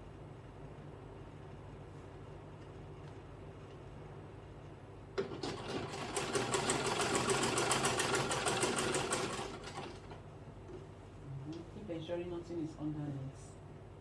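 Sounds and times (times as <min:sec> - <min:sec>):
sewing machine stitching: 0:05.2 - 0:10.1.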